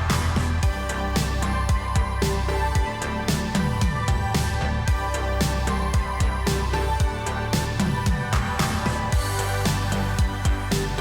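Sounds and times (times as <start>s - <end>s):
synth bass: 0.0s - 11.0s
kick drum beat: 3.8s - 4.3s, 6.0s - 6.4s, 7.0s - 7.2s, 8.0s - 8.6s, 10.2s - 10.7s.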